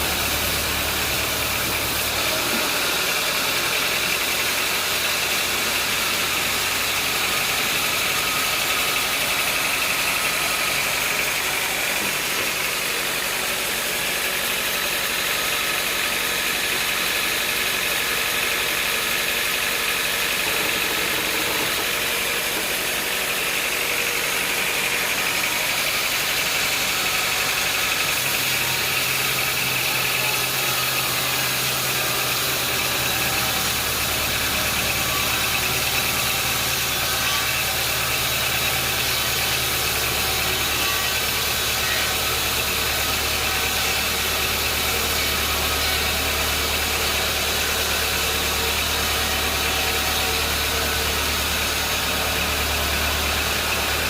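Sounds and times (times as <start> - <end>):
sawmill machinery engine running: 0.0 - 54.0.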